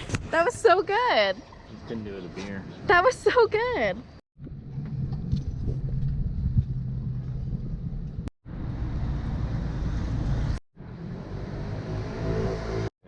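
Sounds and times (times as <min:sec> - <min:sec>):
low mechanical rumble: 0:04.4 - 0:10.4.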